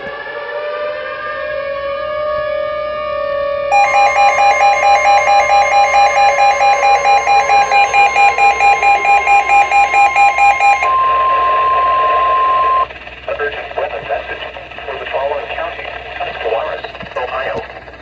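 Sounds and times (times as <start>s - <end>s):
rapid electronic beeping alarm: 3.7s - 12.9s
steady single-pitch warning tone: 3.7s - 12.9s.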